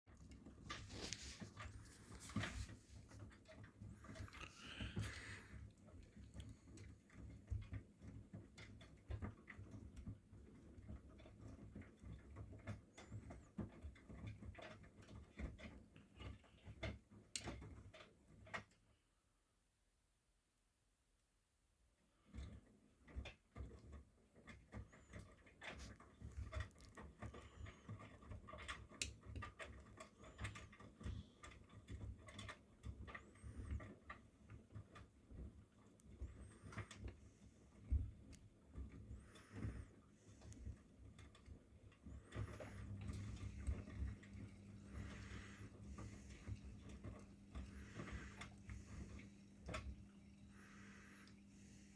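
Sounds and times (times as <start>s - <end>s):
washing machine motor hum: 0.1s - 18.5s, 22.3s - 51.9s
laundry tumbling with soft thuds: 30.8s - 51.9s.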